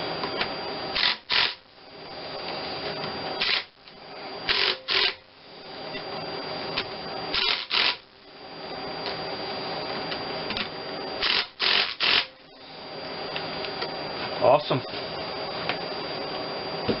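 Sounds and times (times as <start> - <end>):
power tool driving bolts: 7.3 - 8.0, 11.2 - 12.3.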